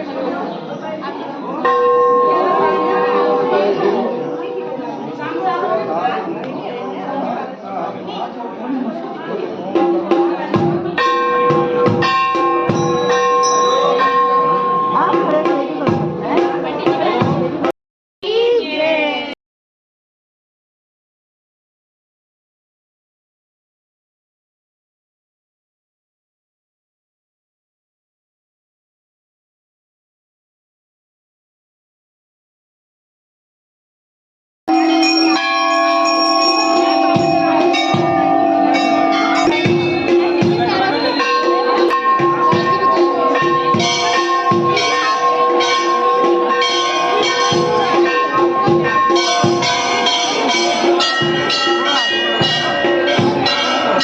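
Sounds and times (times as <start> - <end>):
drum beats: 9.6 - 18.4, 34.7 - 54.0
ringing bell tones: 11.0 - 15.5, 34.7 - 54.0.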